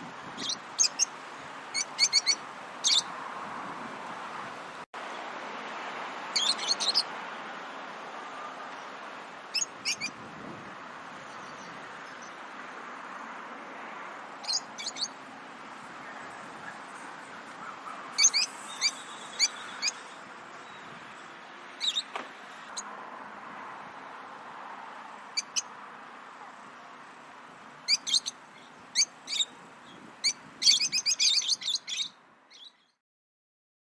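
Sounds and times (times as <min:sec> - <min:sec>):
lovebirds chirping: 0:00.4 - 0:03.2, 0:06.3 - 0:07.6, 0:08.2 - 0:10.2, 0:11.1 - 0:13.4, 0:14.3 - 0:22.9, 0:25.1 - 0:25.8, 0:26.5 - 0:33.0.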